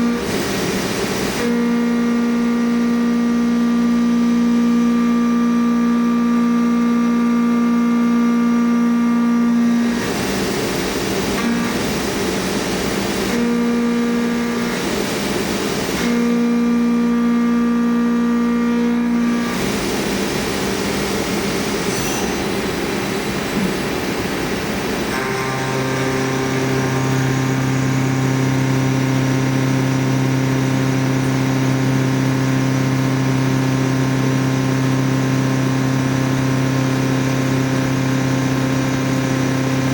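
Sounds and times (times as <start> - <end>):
spindle whine: 16.0 - 35.9
milling cutter cutting steel: 20.9 - 23.8, 24.9 - 31.7.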